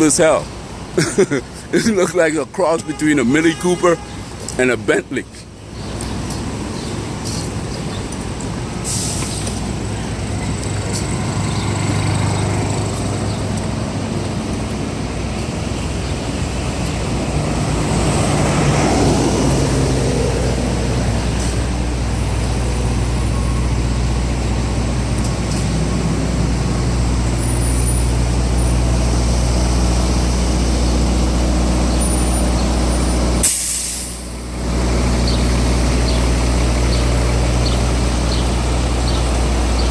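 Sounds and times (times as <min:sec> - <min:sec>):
diesel truck engine idling: 0:06.5 - 0:39.9
air brake hiss: 0:08.8 - 0:09.5, 0:33.4 - 0:34.3.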